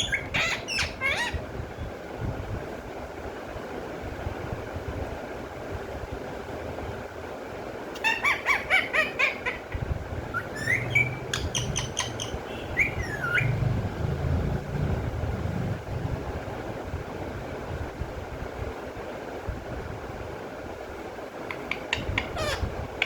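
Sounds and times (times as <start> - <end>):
parrot chirping: 0.0 - 1.4, 8.0 - 13.6, 21.5 - 22.7
steady low rumble: 9.6 - 20.8.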